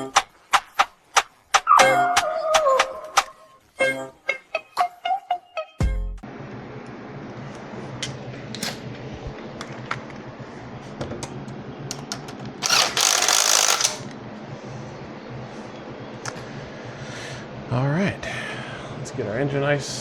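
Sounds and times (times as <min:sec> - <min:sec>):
clicks of hand tools and metal: 0:12.6 - 0:14.0
loud rasping burst: 0:12.6 - 0:14.0.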